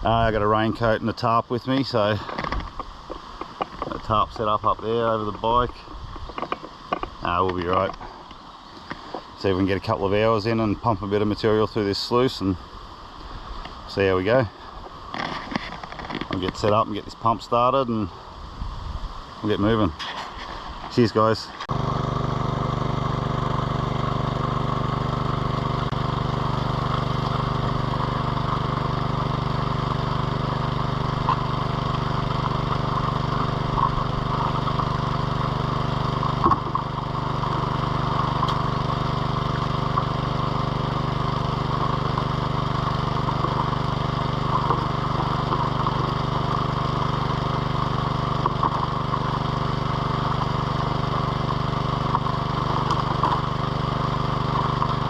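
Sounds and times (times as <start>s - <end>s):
small petrol engine running: 21.7s - 55.0s.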